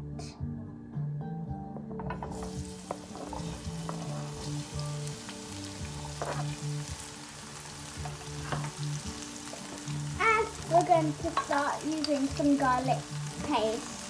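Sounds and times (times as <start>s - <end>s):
stirring clicks: 2.1s - 4.6s, 10.8s - 12.6s
courgette sizzling in oil: 2.1s - 14.0s.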